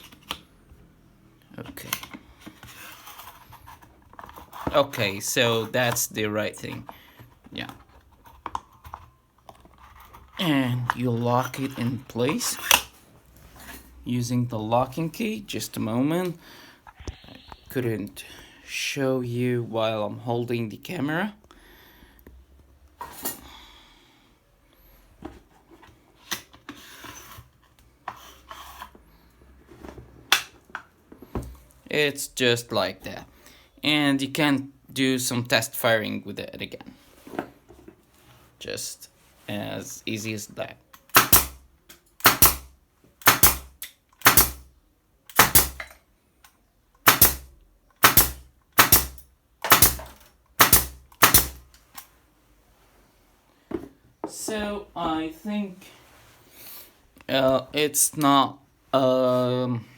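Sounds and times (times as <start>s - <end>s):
metal and plastic scraping: 1.6s - 13.9s
nail gun magazine clicks: 47.0s - 51.6s.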